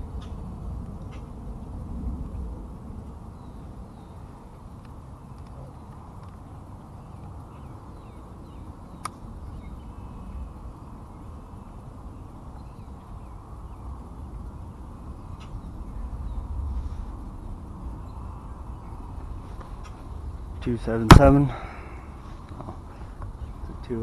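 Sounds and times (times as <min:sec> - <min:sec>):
steady low rumble: 0:00.0 - 0:24.0.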